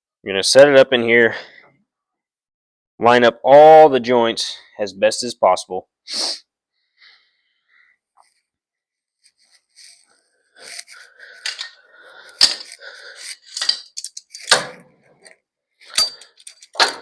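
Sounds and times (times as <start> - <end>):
metal scraping and clanking: 10.6 - 17.0.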